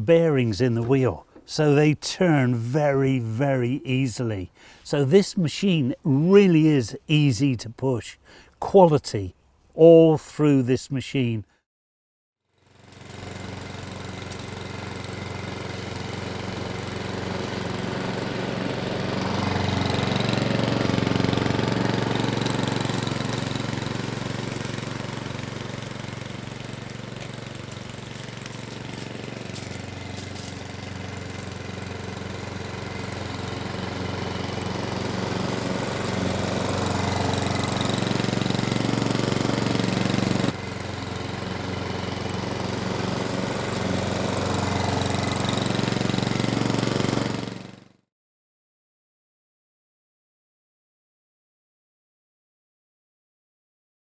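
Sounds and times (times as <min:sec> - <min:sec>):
lawn mower engine running: 0:12.5 - 0:48.0.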